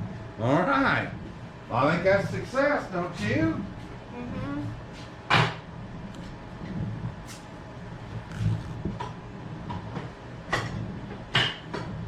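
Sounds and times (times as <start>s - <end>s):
low steady rumble: 0.0s - 5.0s, 5.6s - 12.0s.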